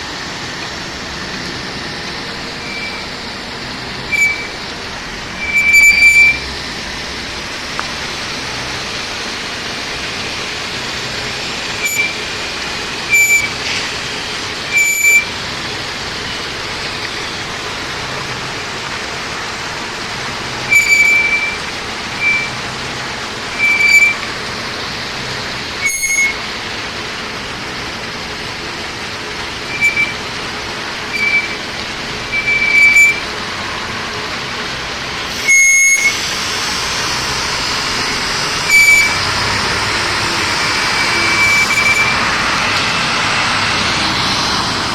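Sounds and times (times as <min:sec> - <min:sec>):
machinery and water noise: 0:00.0 - 0:44.9
loud high-pitched squeaks: 0:01.9 - 0:08.8, 0:10.8 - 0:17.9, 0:20.6 - 0:26.6, 0:29.4 - 0:33.4, 0:35.2 - 0:42.5.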